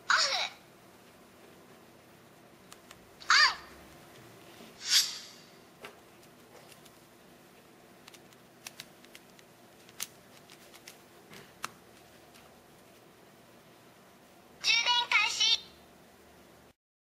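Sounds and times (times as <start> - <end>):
hissing swish: 4.8 - 5.6.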